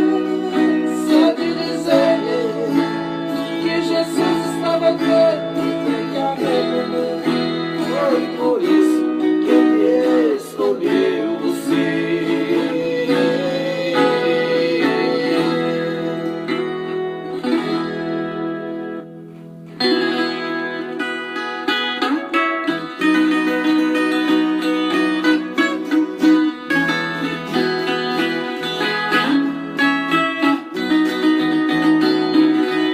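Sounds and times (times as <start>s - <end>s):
person singing: 0.0s - 17.1s
plucked folk guitar: 0.0s - 32.9s.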